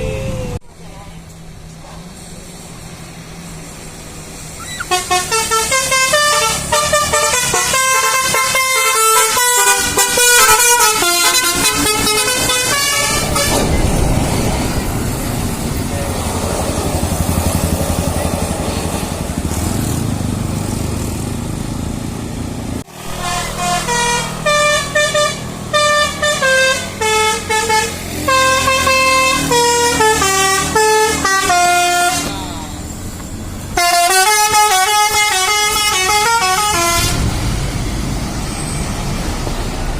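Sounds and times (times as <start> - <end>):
air horn playing melodic runs: 4.6 - 13.5, 23.1 - 32.3, 33.8 - 37.2.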